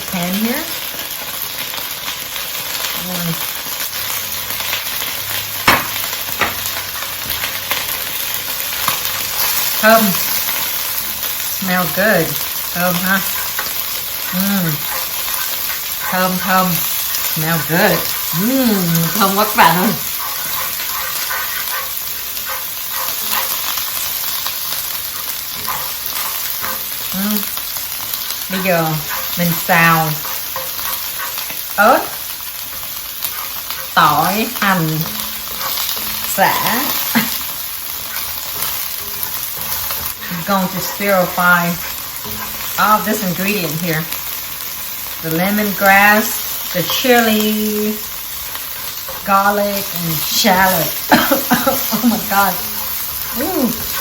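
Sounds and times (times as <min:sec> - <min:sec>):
food sizzling in hot oil: 0:00.0 - 0:54.0
utensil stirring in pan: 0:00.8 - 0:54.0
sharp knocks: 0:05.7 - 0:06.7.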